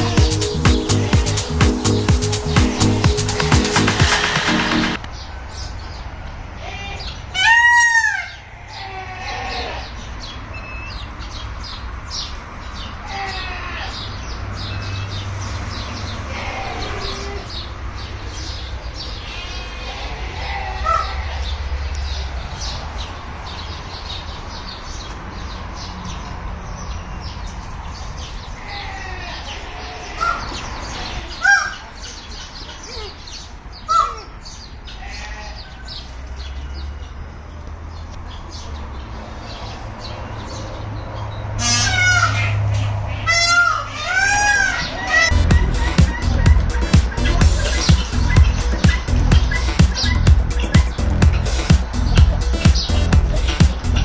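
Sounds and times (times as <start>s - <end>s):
birds calling and chirping: 0.0s - 6.0s, 42.8s - 54.0s
steady low hum: 45.3s - 54.0s.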